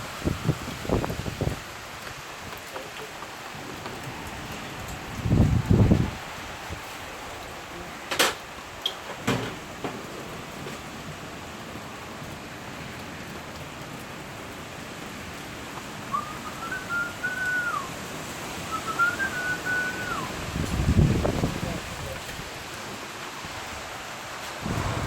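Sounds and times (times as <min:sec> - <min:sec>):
heavy rain falling: 0:00.0 - 0:25.0
sharp knocks: 0:09.1 - 0:10.8
whistled sliding notes: 0:16.1 - 0:17.9, 0:18.7 - 0:20.3.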